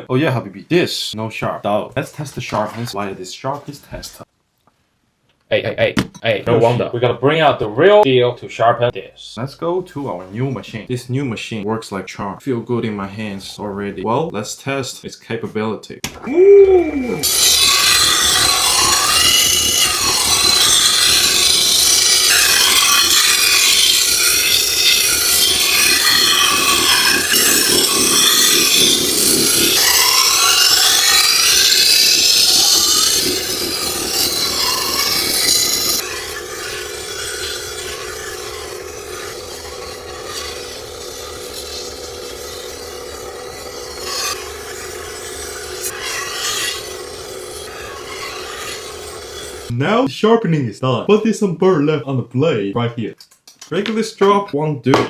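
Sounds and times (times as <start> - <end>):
blade grinding on sharpening machine: 17.1 - 49.7.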